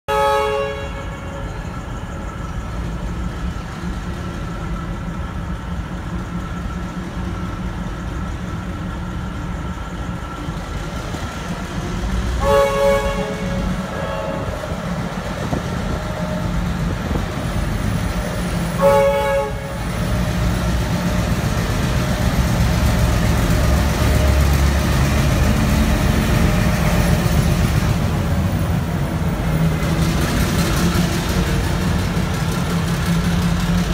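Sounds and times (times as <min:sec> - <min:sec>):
low rumble of engine and train: 0:00.0 - 0:33.9
locomotive horn blasts: 0:00.1 - 0:01.7, 0:12.4 - 0:14.8, 0:18.7 - 0:20.0.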